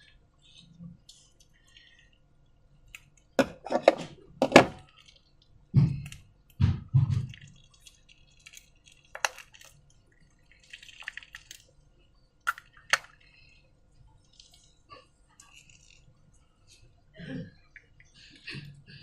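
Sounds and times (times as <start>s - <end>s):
wet slime clicks and crackling: 4.8s - 11.8s, 12.4s - 13.5s.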